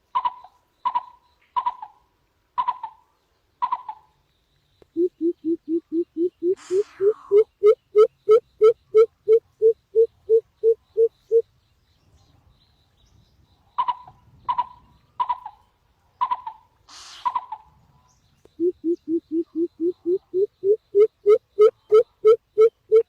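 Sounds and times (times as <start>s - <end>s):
short sharp bird calls: 4.9s - 9.4s, 16.2s - 17.7s
bird hooting: 4.9s - 11.4s, 18.6s - 23.0s
brief hiss: 6.6s - 7.3s, 16.8s - 17.4s.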